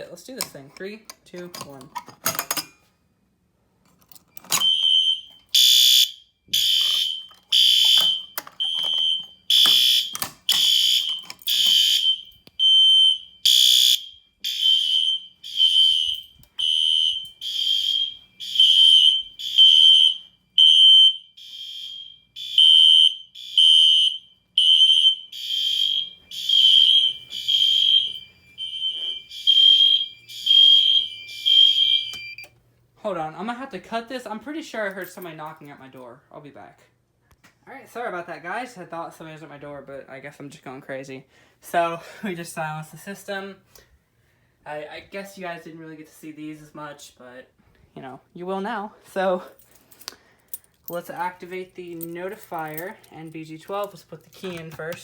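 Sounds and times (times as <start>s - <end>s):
fire alarm horns pulsing: 4.5s - 32.5s.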